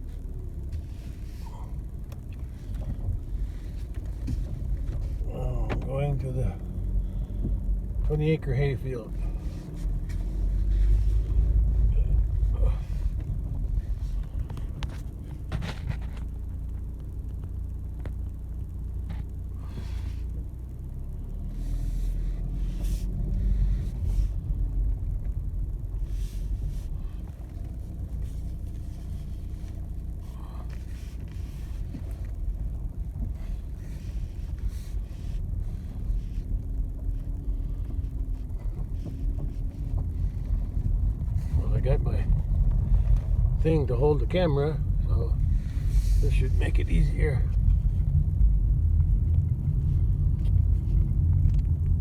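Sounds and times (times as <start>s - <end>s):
vehicle engine and tyres rumbling: 0.0s - 52.0s.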